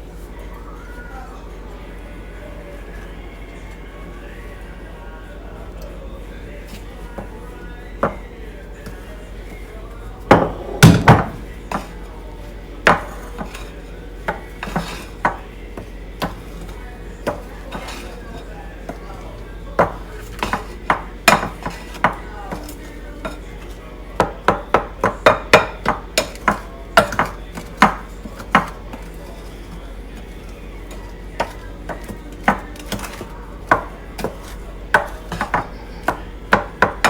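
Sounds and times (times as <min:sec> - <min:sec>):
spatula knocking on mixing bowl: 0:10.3 - 0:12.0, 0:12.9 - 0:18.1, 0:19.8 - 0:37.0.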